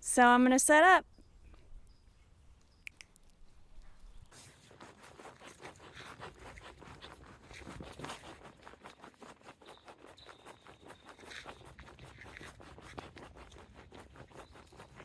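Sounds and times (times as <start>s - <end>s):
camping gear rustling and scraping: 3.5s - 15.0s.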